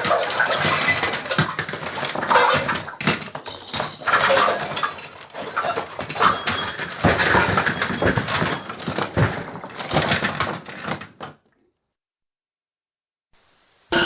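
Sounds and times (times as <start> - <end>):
clattering knocks bangs and rattles: 0.0 - 11.4.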